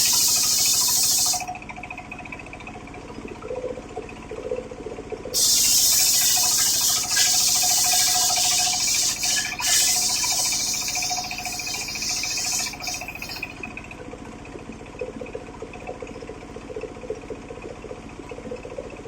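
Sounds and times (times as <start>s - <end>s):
circular saw cutting wood: 0.0s - 1.5s, 5.4s - 13.7s
engine droning: 0.0s - 4.6s, 5.3s - 14.0s.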